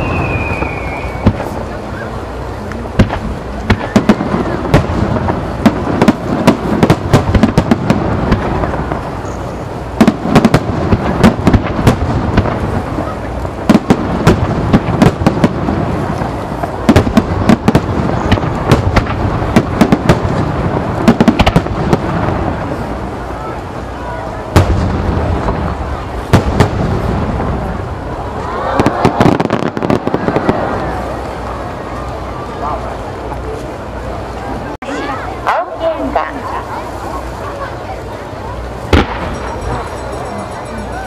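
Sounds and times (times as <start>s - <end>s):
continuous rumble: 0.0s - 41.0s
fireworks shells bursting: 38.8s - 41.0s.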